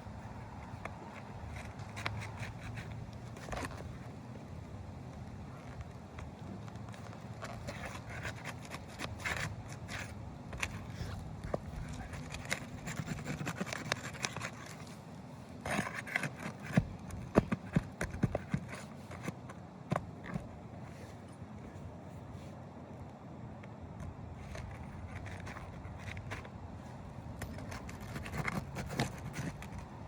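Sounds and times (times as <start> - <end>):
scraping on roof shingles: 6.8 - 15.0, 15.6 - 21.2, 24.4 - 30.0.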